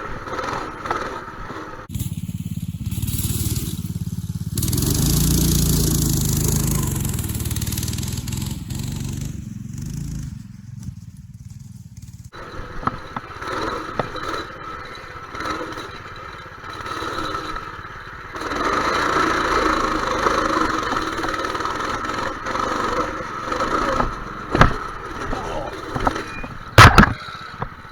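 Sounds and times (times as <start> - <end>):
dirt bike engine revving: 0.0 - 27.9
knocks and clatter: 10.8 - 27.9.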